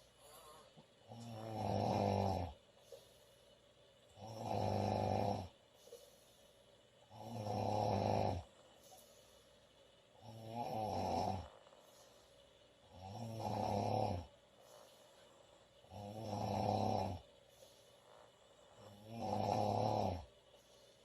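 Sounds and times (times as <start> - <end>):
woman snoring loudly: 1.1 - 2.6, 4.2 - 5.5, 7.1 - 8.5, 10.2 - 11.6, 12.9 - 14.3, 15.9 - 17.2, 18.8 - 20.3.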